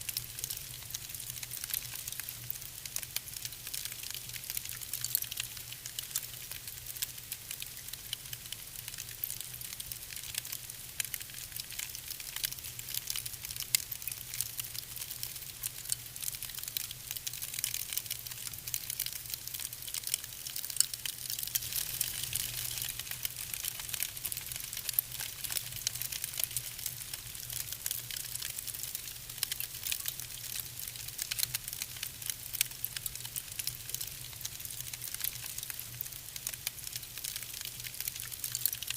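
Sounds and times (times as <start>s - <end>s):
wood fire crackling: 0.1s - 38.9s.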